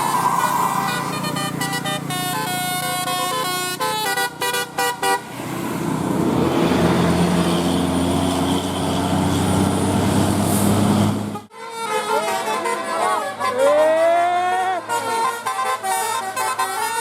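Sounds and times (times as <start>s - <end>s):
bus engine pulling away: 0.0s - 3.8s, 4.6s - 11.5s
musical bus air horn melody: 0.7s - 5.3s, 11.2s - 17.0s.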